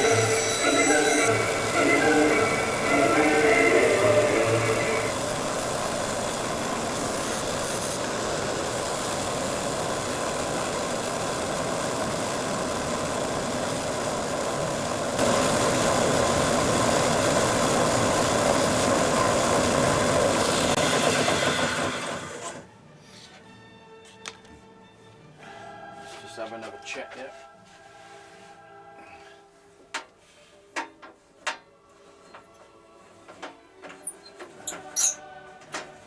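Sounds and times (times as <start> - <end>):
bandsaw running: 0.0 - 22.7.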